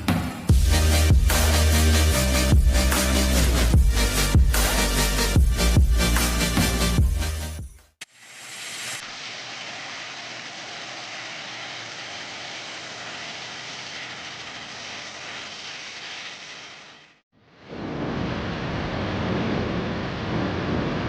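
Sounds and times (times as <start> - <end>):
low rumble: 17.5 - 21.0
jet engines rushing: 17.7 - 21.0.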